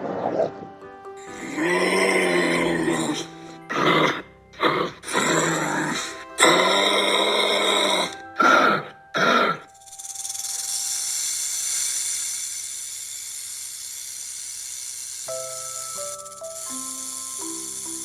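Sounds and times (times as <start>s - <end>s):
animal calling loudly: 1.2s - 12.4s
steady high hiss: 1.2s - 18.0s.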